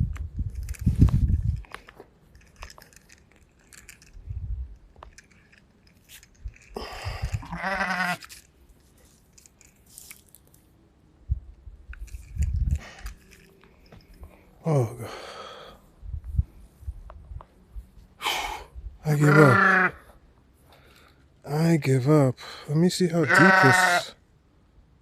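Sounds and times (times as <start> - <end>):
livestock bleating: 7.3 - 8.2, 19.1 - 20.1, 23.2 - 24.2.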